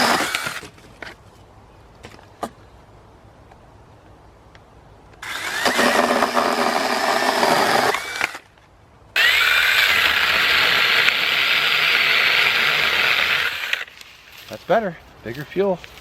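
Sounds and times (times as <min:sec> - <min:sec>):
mini chainsaw cutting wood: 0:00.0 - 0:00.7, 0:05.2 - 0:08.5, 0:09.2 - 0:13.9.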